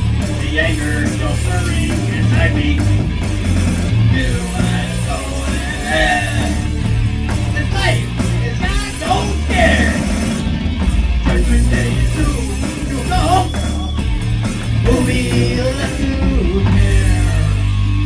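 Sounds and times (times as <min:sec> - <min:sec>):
loud rock band playing: 0:00.0 - 0:18.0
person singing and yelling: 0:00.3 - 0:03.0, 0:04.0 - 0:06.8, 0:07.6 - 0:10.2, 0:11.3 - 0:14.0, 0:14.8 - 0:17.7.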